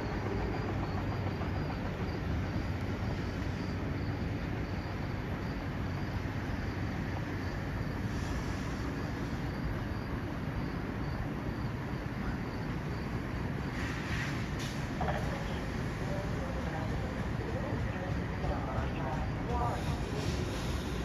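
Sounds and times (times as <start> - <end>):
insect chirping: 0.0 - 14.5
electric train rumbling by: 0.0 - 21.0.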